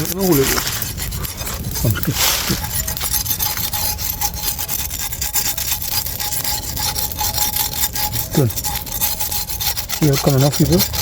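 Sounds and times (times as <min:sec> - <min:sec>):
scraping charred skin: 0:00.0 - 0:11.0.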